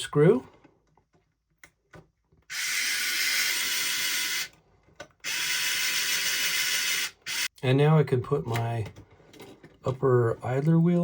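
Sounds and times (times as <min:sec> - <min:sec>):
electric screwdriver whining: 0:02.5 - 0:04.6, 0:05.2 - 0:07.5.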